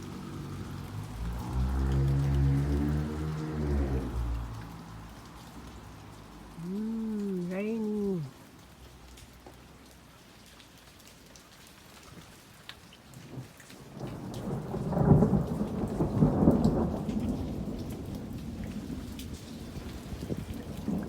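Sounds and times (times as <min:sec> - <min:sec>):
thunder rumbling: 0:00.0 - 0:05.0, 0:14.0 - 0:21.0
steady rain: 0:00.0 - 0:21.0.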